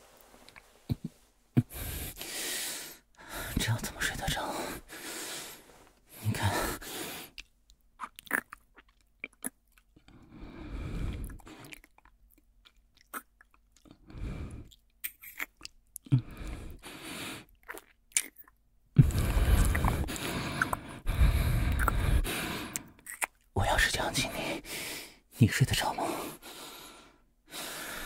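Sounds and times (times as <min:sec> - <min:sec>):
soft breaths: 0:00.0 - 0:07.4, 0:10.1 - 0:11.8, 0:16.2 - 0:17.5, 0:19.0 - 0:23.0, 0:23.6 - 0:28.0.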